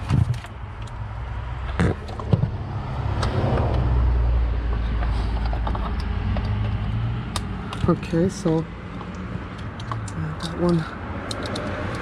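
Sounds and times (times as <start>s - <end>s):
low vehicle rumble: 0.0s - 12.0s
plastic connectors clicking: 5.0s - 7.9s, 9.0s - 12.0s.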